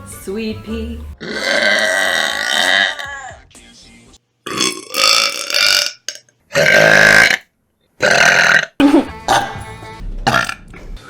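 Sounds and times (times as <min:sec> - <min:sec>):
girl burping: 0:01.2 - 0:03.1, 0:04.5 - 0:07.4, 0:08.0 - 0:09.6.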